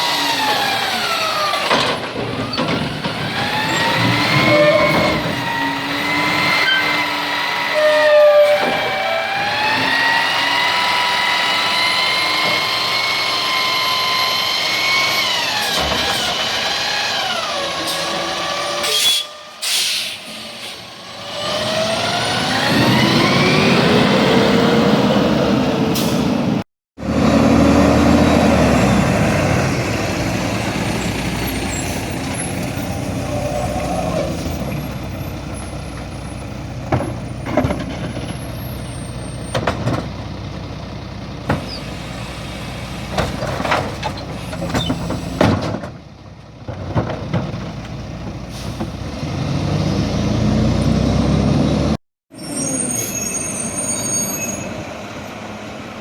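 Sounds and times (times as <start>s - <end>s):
truck engine revving: 0.0s - 18.8s, 20.3s - 45.4s, 48.0s - 52.0s
air brakes hissing: 18.8s - 20.9s, 48.5s - 49.0s.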